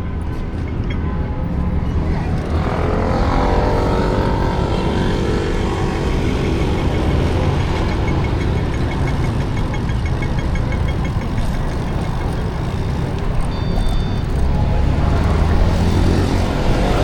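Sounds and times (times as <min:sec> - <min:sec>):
street traffic rushing: 0:00.0 - 0:17.0
vehicle engine passing: 0:02.0 - 0:09.6.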